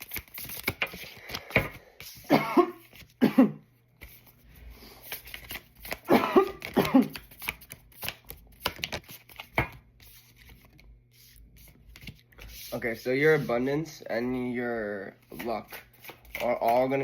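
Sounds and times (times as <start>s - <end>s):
cards being shuffled: 0.0s - 3.2s, 5.0s - 13.6s, 15.3s - 17.0s
person coughing: 2.2s - 3.7s, 6.0s - 7.2s.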